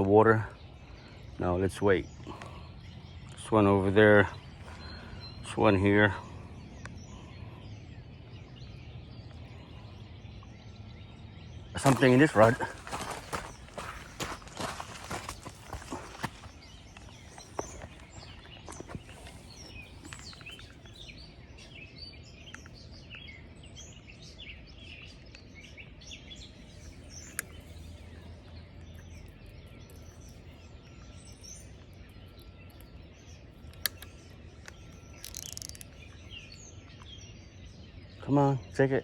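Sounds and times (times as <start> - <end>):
birds chirping and singing: 0.0 - 39.0
low outdoor background hum: 0.0 - 39.0
sharp clicks: 33.6 - 36.3.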